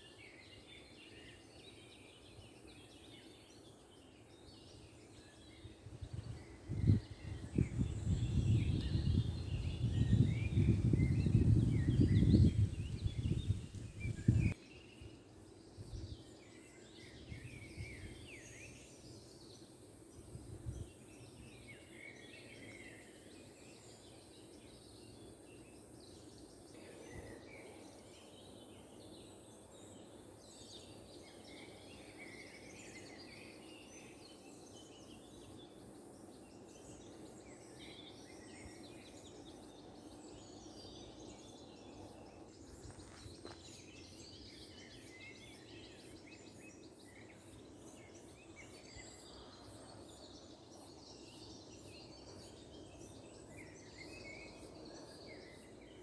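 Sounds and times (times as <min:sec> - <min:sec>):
small birds chirping: 0:02.5 - 0:17.2, 0:34.1 - 0:56.0.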